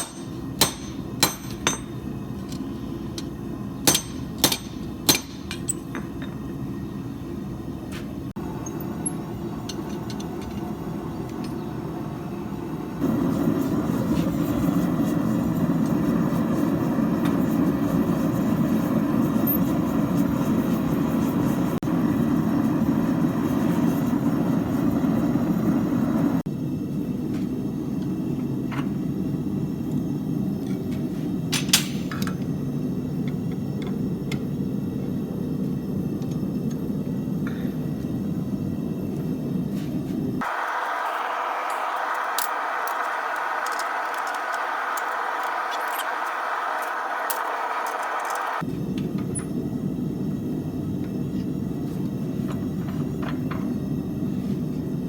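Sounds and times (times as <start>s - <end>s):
workshop machinery roaring: 0.0s - 55.0s
light metallic clinks: 8.4s - 11.7s.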